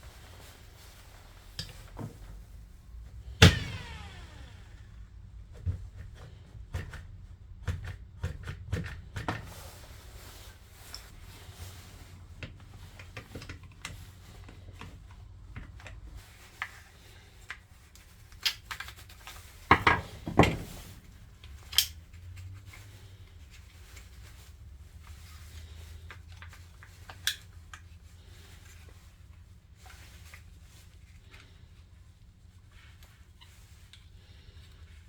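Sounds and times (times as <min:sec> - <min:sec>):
small parts clicking and rubbing: 0:15.6 - 0:24.3, 0:25.1 - 0:31.6.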